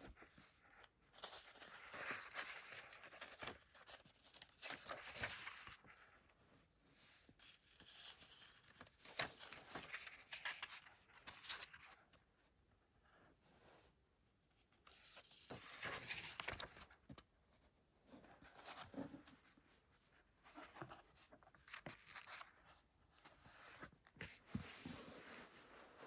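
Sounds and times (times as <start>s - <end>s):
paper and card rustling: 1.1s - 5.9s, 7.6s - 12.0s, 14.9s - 17.2s, 20.5s - 22.6s.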